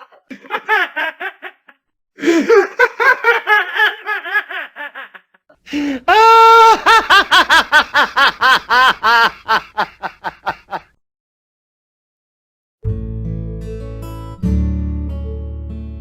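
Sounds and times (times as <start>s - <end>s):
exaggerated high-pitched laugh: 2.5s - 5.4s, 6.1s - 10.9s.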